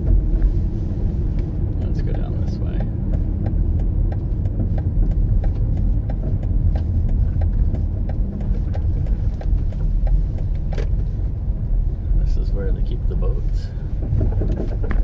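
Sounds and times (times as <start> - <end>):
car engine and road rumble: 0.0 - 15.0
light regular ticking: 1.3 - 11.2.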